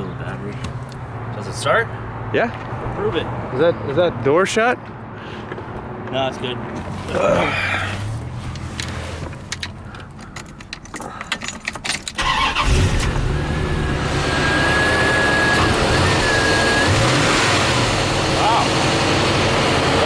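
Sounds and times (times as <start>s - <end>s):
car engine cranking and idling: 7.6s - 20.0s.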